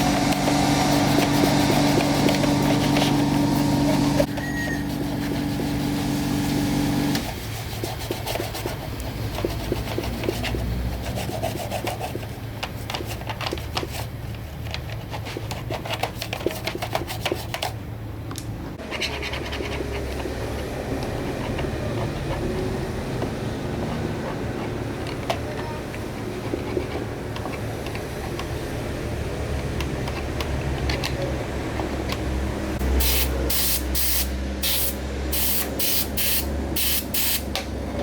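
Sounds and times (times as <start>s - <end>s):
hands rubbing and scraping: 0.1s - 6.2s, 7.2s - 17.8s.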